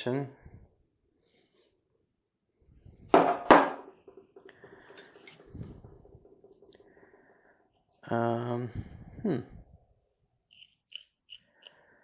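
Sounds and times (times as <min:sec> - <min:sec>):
metal tools clanking: 0:04.8 - 0:06.8.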